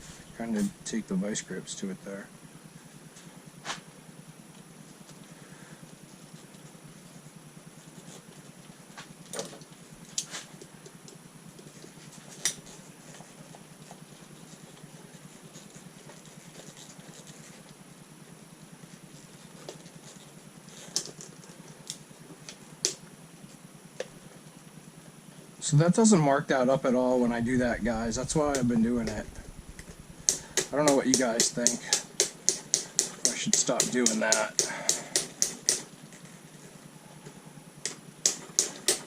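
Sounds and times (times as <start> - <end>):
steady low hum: 0.0 - 39.0
hand tool clicks and taps: 30.2 - 35.9, 37.8 - 39.0.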